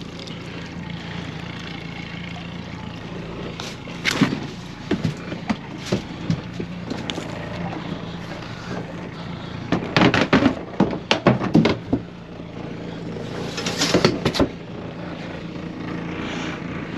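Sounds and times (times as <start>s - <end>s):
engine running: 0.0s - 16.9s
sharp knocks and clatters: 4.0s - 7.4s, 9.7s - 12.1s, 13.5s - 14.6s.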